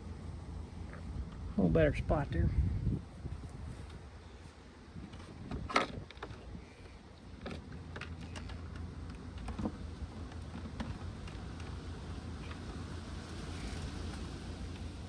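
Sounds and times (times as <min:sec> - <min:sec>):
wind rumble on microphone: 0:01.0 - 0:07.0.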